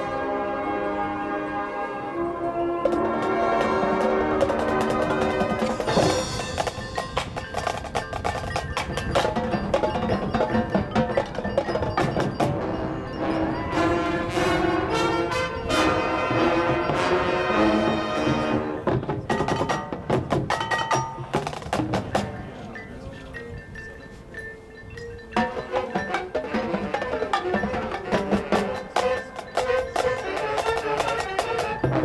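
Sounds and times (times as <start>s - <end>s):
marching band playing: 0.0s - 22.7s, 25.4s - 32.0s
mallet percussion notes: 2.2s - 32.0s
sharp percussion strikes: 2.9s - 17.8s, 18.8s - 23.5s.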